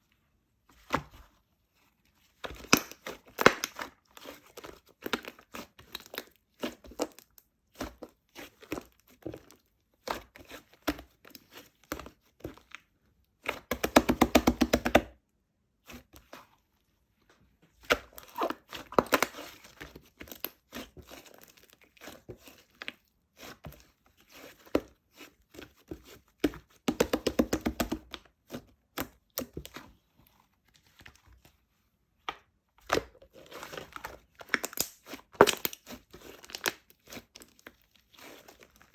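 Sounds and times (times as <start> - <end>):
crinkling and crumpling: 16.2 - 26.9, 27.9 - 38.9.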